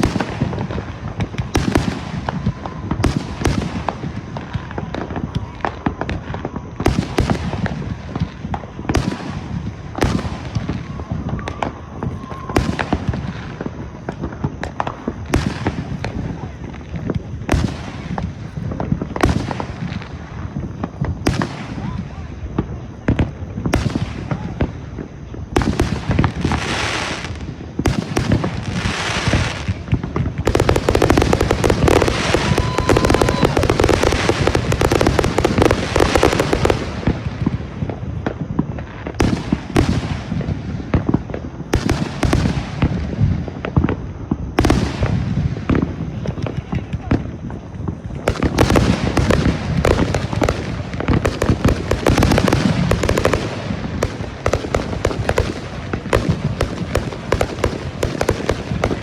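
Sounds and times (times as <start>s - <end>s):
fireworks booming and crackling: 0.0s - 59.0s.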